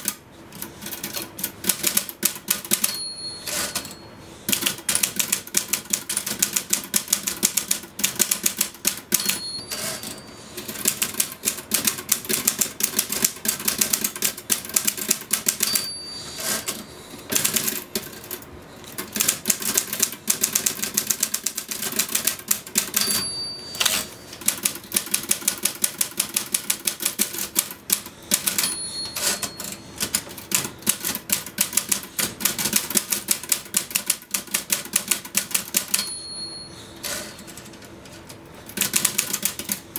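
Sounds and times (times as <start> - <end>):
typewriter key strikes: 0.9 - 3.9
typewriter bell ding: 2.6 - 4.1, 8.9 - 10.7, 15.3 - 16.8, 22.8 - 24.7, 28.2 - 30.2, 35.7 - 37.7.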